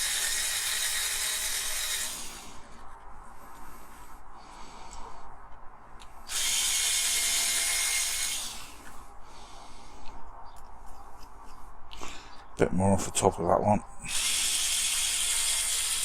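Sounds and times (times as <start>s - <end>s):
electric drill grinding: 0.0s - 2.6s, 6.3s - 9.0s, 14.1s - 16.0s.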